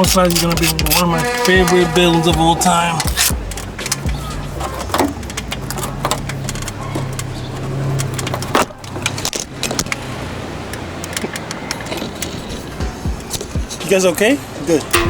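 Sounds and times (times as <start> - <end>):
metallic clicks and scrapes: 0.0 - 10.1
engine low hum: 0.2 - 13.4.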